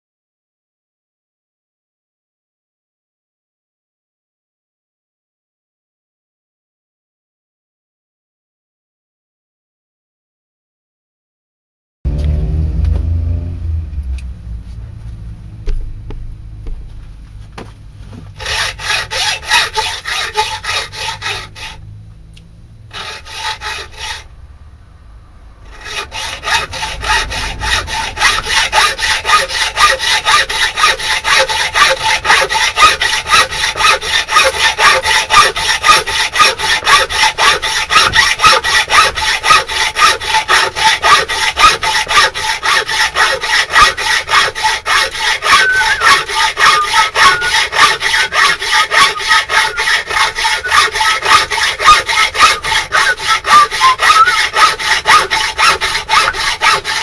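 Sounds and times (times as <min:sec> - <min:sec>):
hand saw cutting: 0:18.1 - 0:21.8, 0:22.9 - 0:24.3, 0:25.6 - 0:57.0.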